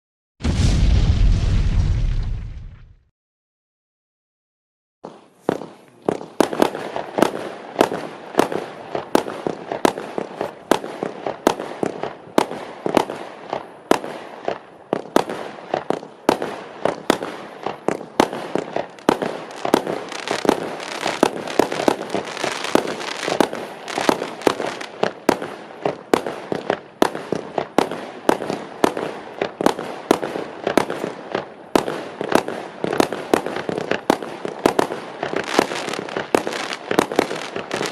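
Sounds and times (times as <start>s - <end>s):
firework crackling: 5.1s - 37.9s
firework cake bangs: 16.9s - 37.9s.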